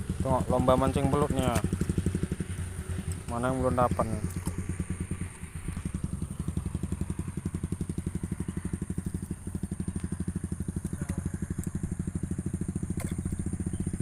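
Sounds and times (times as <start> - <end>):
small engine running: 0.0 - 14.0.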